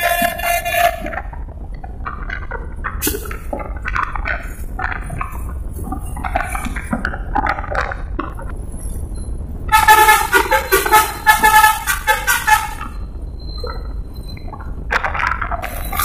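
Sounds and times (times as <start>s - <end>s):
bus musical horn tootling: 0.0s - 1.2s, 9.7s - 13.1s.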